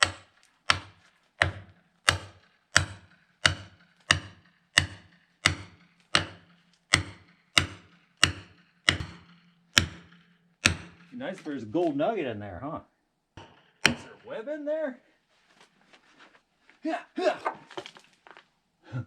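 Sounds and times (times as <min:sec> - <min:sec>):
metal-on-metal hammer strikes: 0:00.0 - 0:11.2, 0:13.4 - 0:14.4.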